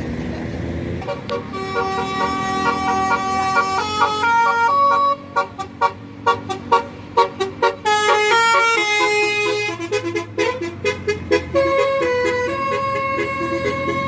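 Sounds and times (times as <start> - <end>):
bus multi-tone horn tune: 1.0 - 14.0.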